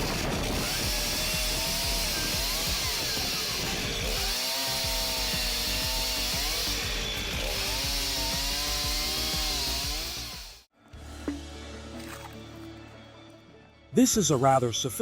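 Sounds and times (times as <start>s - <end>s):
chainsaw cutting logs: 0.0s - 11.5s.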